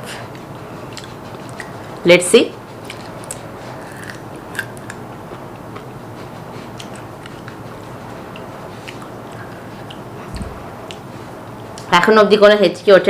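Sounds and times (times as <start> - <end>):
person chewing crunchily: 0.3 - 1.8, 2.8 - 11.1
wet mouth clicks: 2.8 - 5.0, 8.3 - 11.0.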